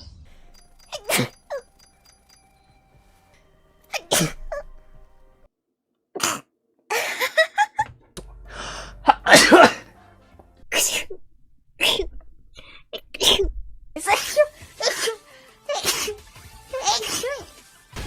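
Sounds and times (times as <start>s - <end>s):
person sneezing: 0.8s - 1.4s, 3.9s - 4.7s, 6.2s - 6.5s, 9.1s - 9.9s, 10.7s - 11.2s, 11.8s - 13.5s, 14.1s - 16.2s
breathy intake: 8.5s - 10.0s.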